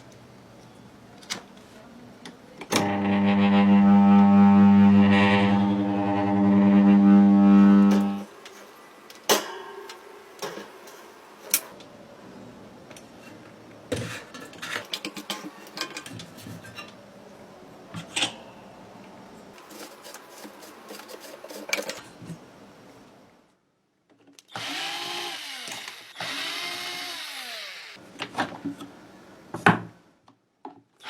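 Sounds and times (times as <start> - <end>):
electric fan motor humming: 2.8 - 8.3, 24.6 - 28.0.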